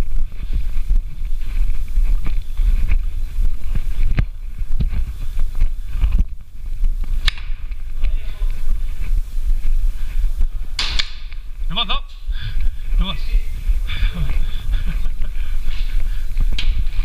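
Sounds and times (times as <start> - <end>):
rumbling buffeting on microphone: 0.0 - 17.0
sharp cracks: 7.0 - 8.0, 10.8 - 11.5.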